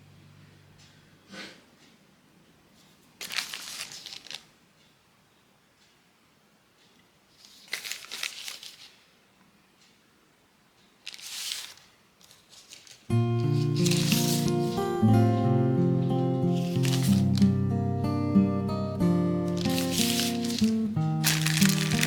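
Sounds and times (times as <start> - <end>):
crinkling and rustling: 2.8 - 4.6, 7.3 - 9.1, 11.0 - 15.5, 16.5 - 17.6, 19.4 - 22.0.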